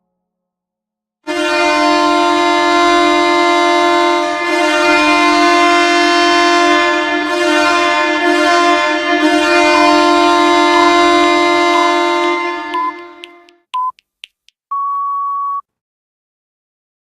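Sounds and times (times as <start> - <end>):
low goal horn: 1.3 - 13.6.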